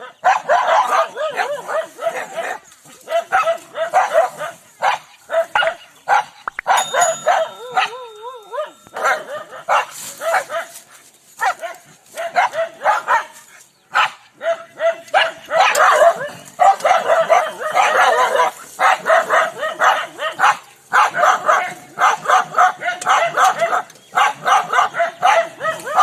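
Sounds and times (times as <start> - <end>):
dog barking angrily: 0.0 - 6.4, 11.4 - 13.3, 13.9 - 26.0.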